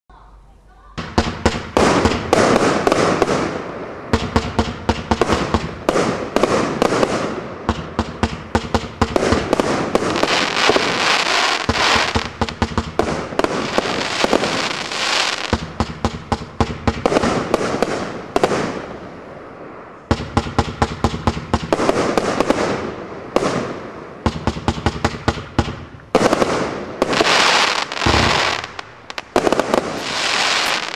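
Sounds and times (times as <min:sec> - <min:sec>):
firework hissing and crackling: 0:09.0 - 0:15.8, 0:26.2 - 0:30.9.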